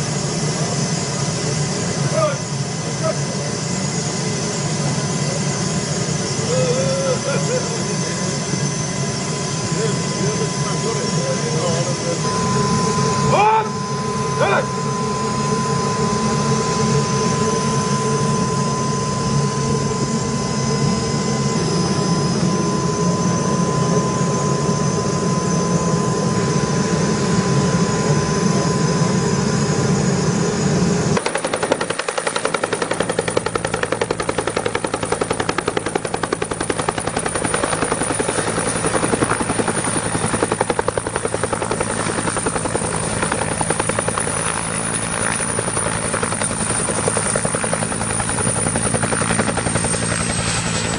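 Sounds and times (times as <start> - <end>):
helicopter engine and rotor: 0.0 - 50.9.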